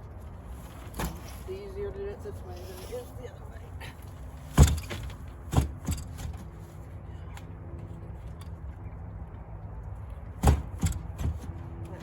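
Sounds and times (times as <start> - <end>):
sharp knocks: 10.4 - 11.6.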